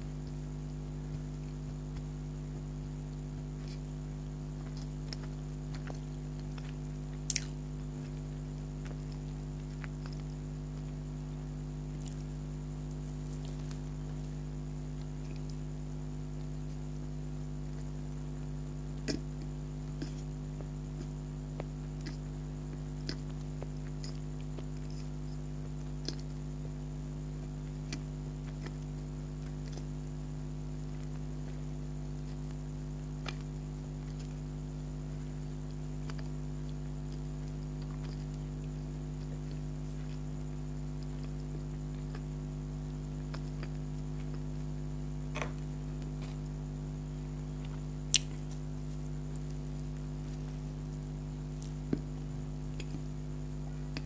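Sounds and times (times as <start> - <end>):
steady electrical hum: 0.0 - 54.0
person chewing: 0.2 - 35.2, 36.0 - 42.4, 43.1 - 46.6, 47.2 - 53.1
wet mouth smacks: 19.0 - 19.3, 48.1 - 48.6.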